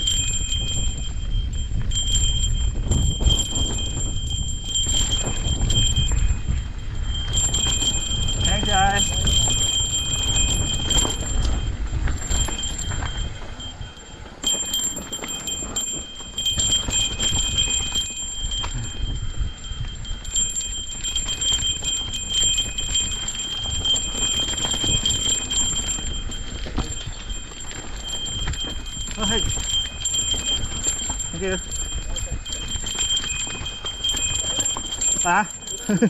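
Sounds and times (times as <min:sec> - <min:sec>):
mountain bike clattering on trail: 0:00.0 - 0:36.0.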